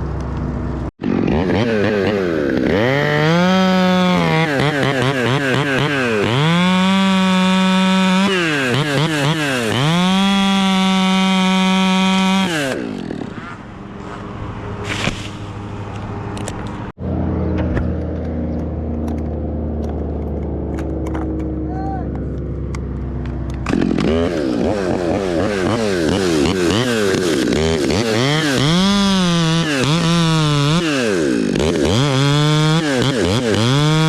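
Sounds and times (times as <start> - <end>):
chainsaw revving: 1.0 - 14.4, 23.3 - 34.0.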